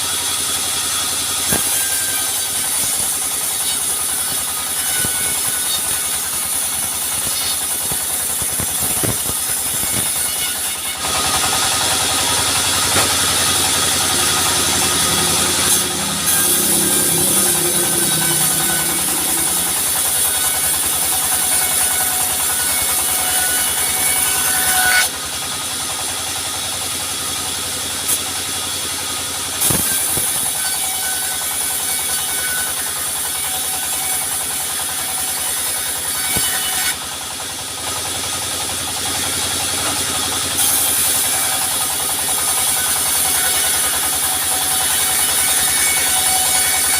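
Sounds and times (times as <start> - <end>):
saw cutting timber hissing: 0.0 - 46.9
sharp knocks: 12.8 - 13.7.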